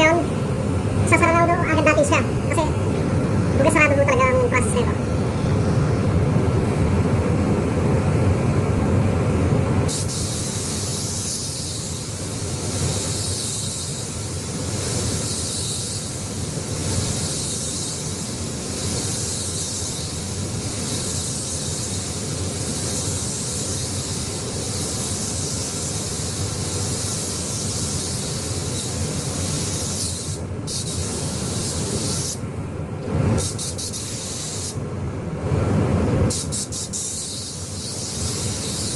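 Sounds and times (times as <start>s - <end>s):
steady low rumble: 0.0s - 38.9s
paint spray gun hissing: 9.9s - 32.4s, 33.4s - 34.8s, 36.3s - 38.9s.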